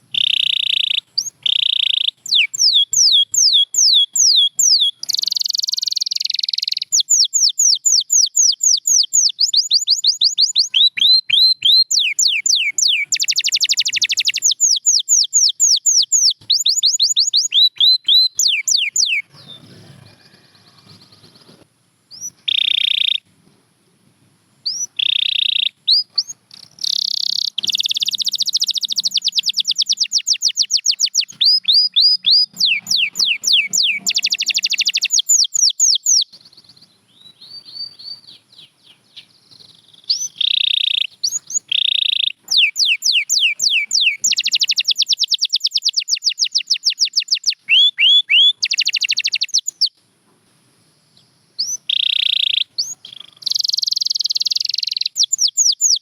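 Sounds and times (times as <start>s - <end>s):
canary singing trills: 0.0s - 23.3s, 24.6s - 50.0s, 51.1s - 56.0s.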